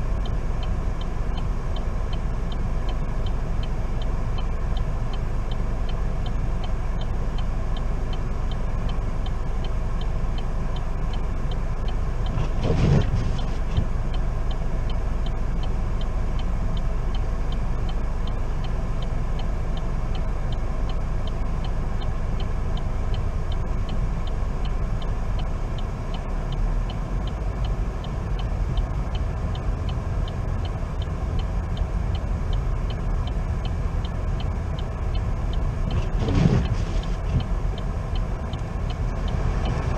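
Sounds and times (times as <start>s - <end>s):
car road and engine rumble: 0.0s - 39.9s
light ticking: 0.0s - 39.9s.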